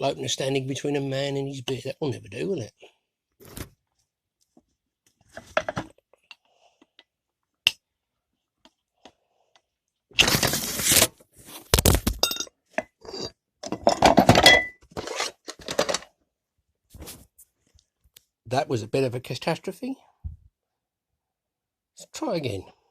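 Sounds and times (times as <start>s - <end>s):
glassy clinks and clatter: 12.2s - 12.5s, 13.1s - 14.8s.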